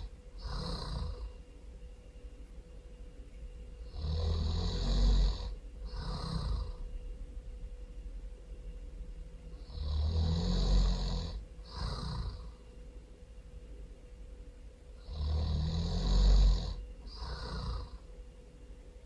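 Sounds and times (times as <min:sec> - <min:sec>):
person snoring loudly: 0:00.0 - 0:01.4, 0:03.8 - 0:06.8, 0:09.6 - 0:12.6, 0:15.0 - 0:18.1.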